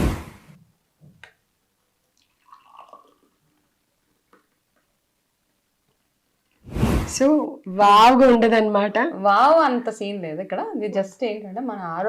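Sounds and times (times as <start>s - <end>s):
liquid pouring and dripping: 2.1s - 3.8s.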